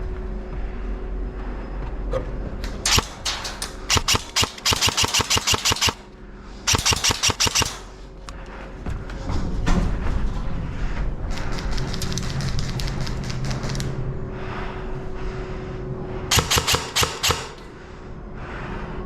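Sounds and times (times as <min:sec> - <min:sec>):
airsoft gun firing bursts: 0:02.9 - 0:06.1, 0:06.7 - 0:08.0, 0:16.3 - 0:17.6.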